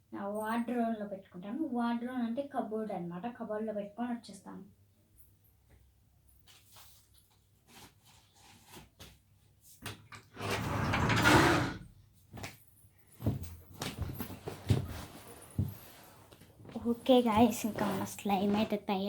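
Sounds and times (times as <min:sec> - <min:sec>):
wardrobe door sliding: 0:10.2 - 0:11.9.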